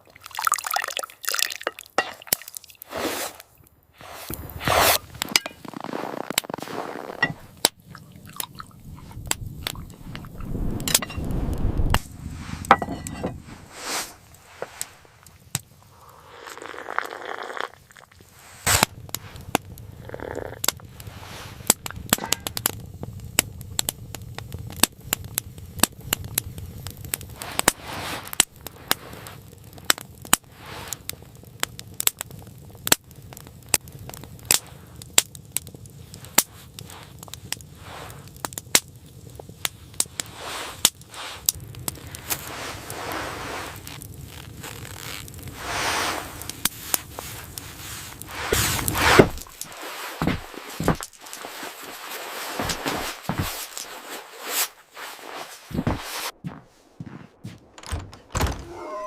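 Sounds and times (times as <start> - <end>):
wood fire crackling and popping: 0.1 - 2.8, 3.5 - 56.5
low rumble: 8.2 - 15.2, 18.7 - 24.0.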